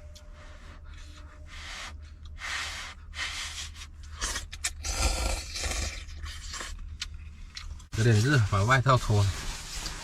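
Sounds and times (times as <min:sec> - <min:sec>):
person slurping noodles: 0:04.1 - 0:06.8.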